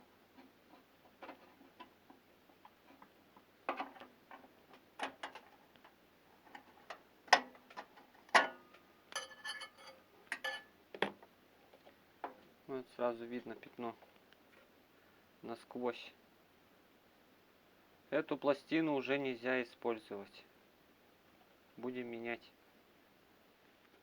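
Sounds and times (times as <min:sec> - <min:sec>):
small clicks and knocks of plate: 0:03.7 - 0:12.4
short ringing rattle: 0:09.2 - 0:10.7.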